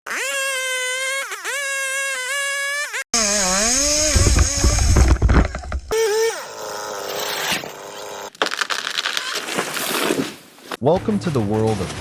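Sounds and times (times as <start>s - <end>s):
chainsaw engine at high revs: 0.1s - 5.0s, 5.9s - 8.3s.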